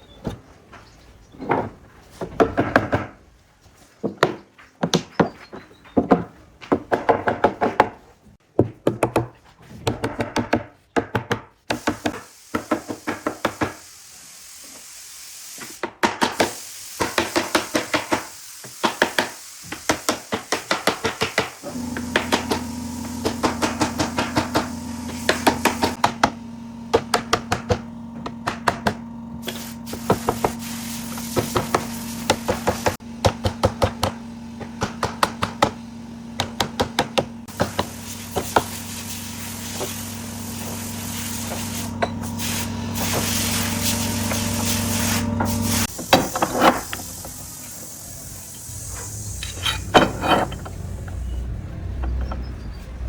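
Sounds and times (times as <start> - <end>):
hammering on wood: 6.0 - 8.0, 8.6 - 13.8, 15.8 - 29.0, 31.3 - 35.8, 36.4 - 38.7
steady machine hum: 21.6 - 52.4.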